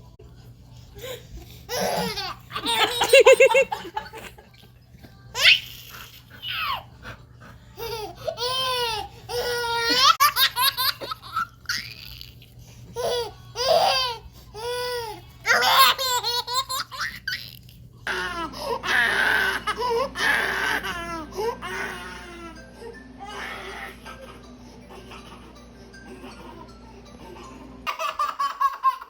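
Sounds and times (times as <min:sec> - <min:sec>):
baby giggling: 0:01.7 - 0:04.3.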